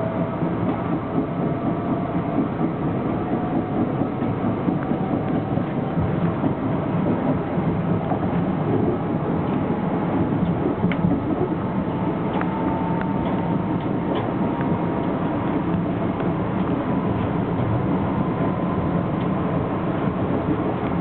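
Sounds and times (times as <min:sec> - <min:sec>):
train rumbling on rails: 0:00.0 - 0:21.0.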